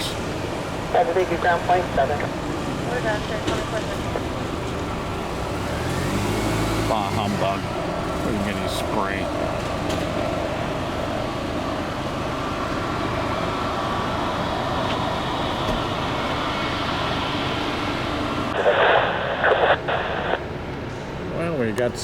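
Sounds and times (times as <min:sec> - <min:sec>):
radio voice: 0:00.0 - 0:00.2, 0:00.9 - 0:04.4, 0:06.9 - 0:09.3, 0:18.6 - 0:20.5.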